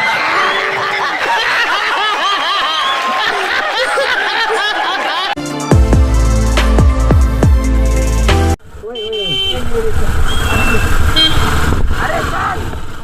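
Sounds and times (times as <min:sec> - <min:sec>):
crowd talking: 0:00.0 - 0:05.4
music with heavy deep beat: 0:05.4 - 0:08.6.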